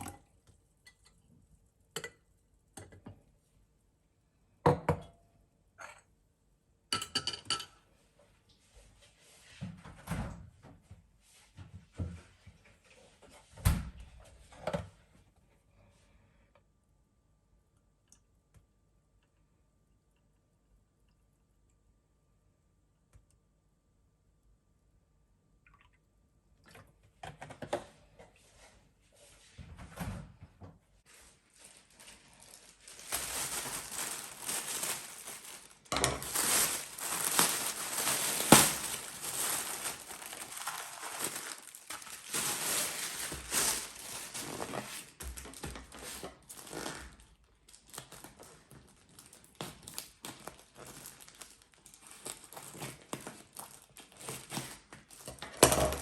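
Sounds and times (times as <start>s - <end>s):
crinkling and rustling handling: 31.0s - 56.0s.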